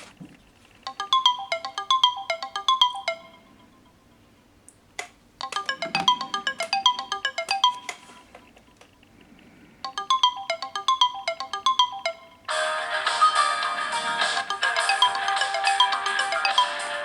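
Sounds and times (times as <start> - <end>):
phone ringtone melody: 0.8 - 4.4, 5.4 - 8.8, 9.8 - 17.0
fuller denser sound: 5.3 - 12.5.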